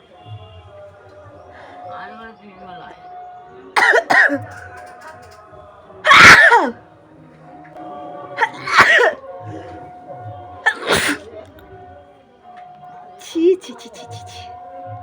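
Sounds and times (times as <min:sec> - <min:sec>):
woman sneezing: 0:06.1 - 0:06.8, 0:08.4 - 0:09.2, 0:10.7 - 0:11.3.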